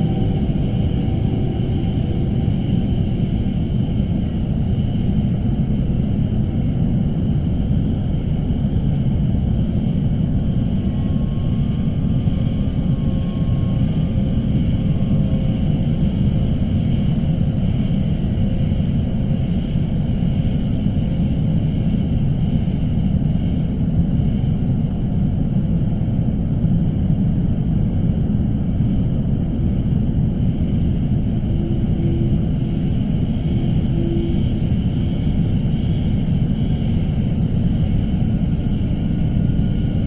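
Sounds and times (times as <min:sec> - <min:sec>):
low rumble: 0:00.0 - 0:15.9, 0:21.6 - 0:40.0
faint pulsing hum: 0:00.0 - 0:40.0.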